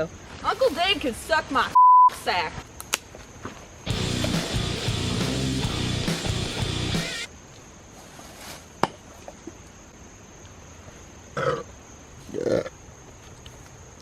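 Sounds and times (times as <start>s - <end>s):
background music: 3.9s - 7.3s
person burping: 11.4s - 11.7s.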